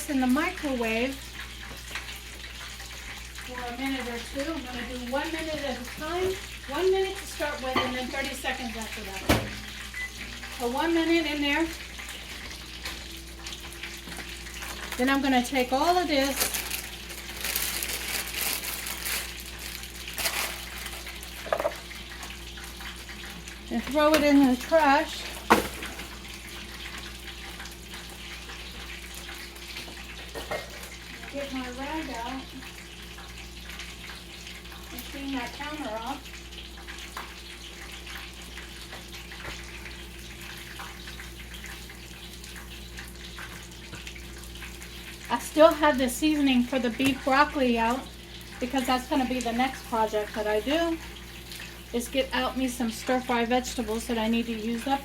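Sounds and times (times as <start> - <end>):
chicken sizzling in oil: 0.0 - 55.0
scraps rustling and crinkling: 14.5 - 21.9.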